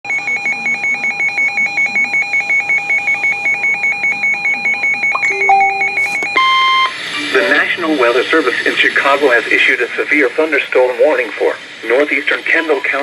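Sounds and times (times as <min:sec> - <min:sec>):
shrill rapid alarm beeping: 0:00.1 - 0:07.6.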